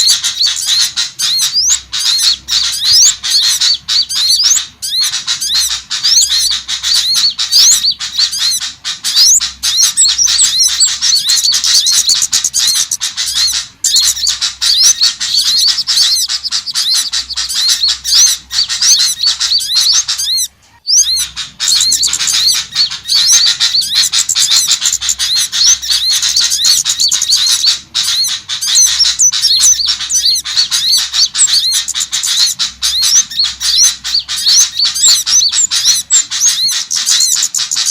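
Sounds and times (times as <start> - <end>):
small songbirds chirping: 0.0 - 37.9.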